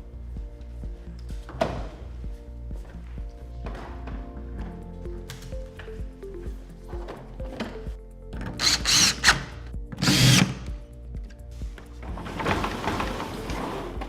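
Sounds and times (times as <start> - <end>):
background music: 0.0 - 14.0
cordless drill running: 8.6 - 10.7.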